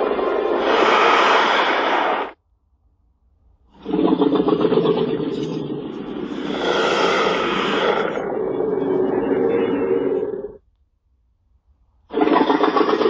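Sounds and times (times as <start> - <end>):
rasping monster roar: 3.8 - 10.5.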